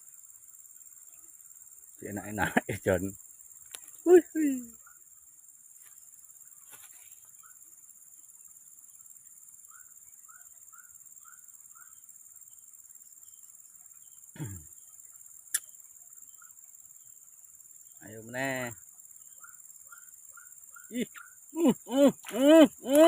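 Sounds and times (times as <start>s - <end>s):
high-pitched drone of insects: 0.0s - 23.0s
sharp click: 15.5s - 15.7s.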